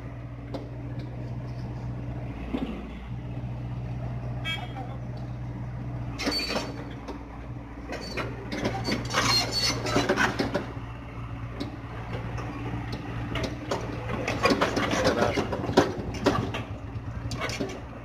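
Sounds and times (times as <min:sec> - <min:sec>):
excavator diesel engine running: 0:00.0 - 0:18.0
metallic clanks and knocks: 0:06.2 - 0:10.8, 0:11.6 - 0:17.9.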